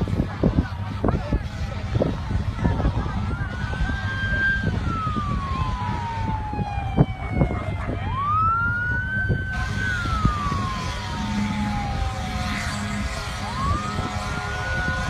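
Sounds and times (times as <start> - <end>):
steady low rumble: 0.0 - 15.0
emergency siren wailing: 1.4 - 15.0.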